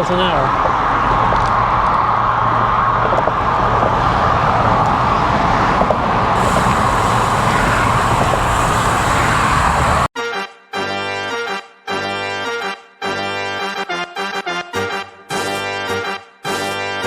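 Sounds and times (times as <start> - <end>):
passing traffic: 0.0 - 10.1
wind and road noise: 0.0 - 10.1
accordion music: 4.9 - 17.0.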